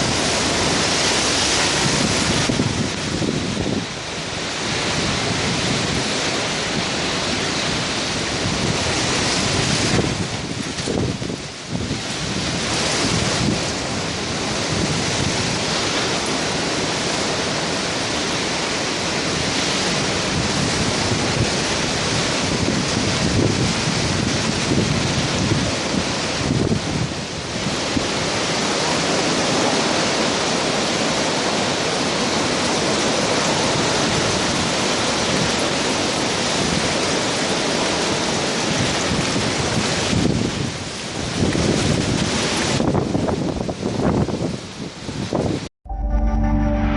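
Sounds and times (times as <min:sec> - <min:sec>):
strong wind buffeting microphone: 0:00.0 - 0:17.2, 0:19.3 - 0:28.2, 0:33.6 - 0:45.7.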